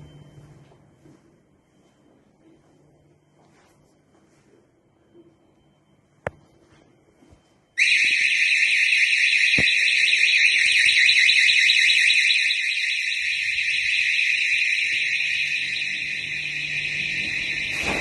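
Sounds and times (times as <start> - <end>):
burglar alarm siren warbling: 7.8 - 18.0.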